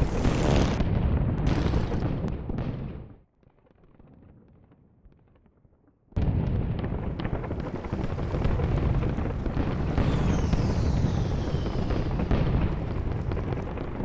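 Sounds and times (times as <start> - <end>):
loud blast: 6.3 - 14.0
heavy rumbling din: 6.6 - 14.0
falling whistle: 9.6 - 13.2.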